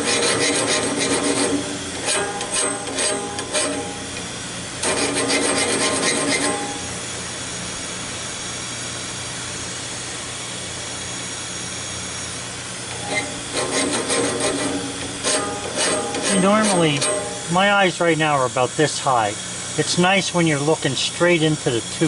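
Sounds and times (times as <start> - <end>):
rasping grinding strokes: 0.0 - 4.1, 4.8 - 6.9, 13.0 - 18.8.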